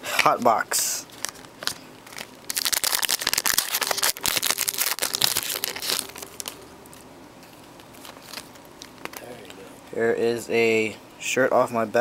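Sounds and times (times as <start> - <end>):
wrapper crinkling: 1.1 - 6.6, 7.8 - 9.4.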